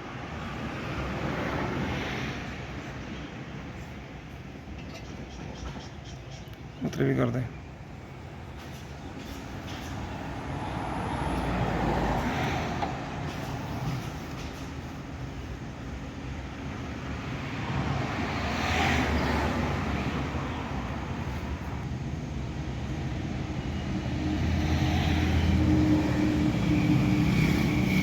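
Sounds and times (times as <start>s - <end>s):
car engine and road noise: 7.7s - 28.0s.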